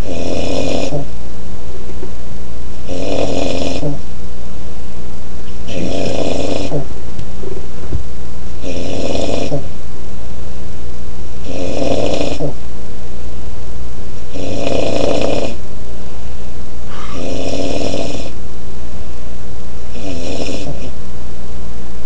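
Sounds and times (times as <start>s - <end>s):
man snoring loudly: 0.0s - 1.1s, 2.8s - 4.0s, 5.7s - 6.9s, 8.6s - 9.7s, 11.4s - 12.6s, 14.3s - 15.6s, 17.0s - 18.4s, 19.9s - 21.0s.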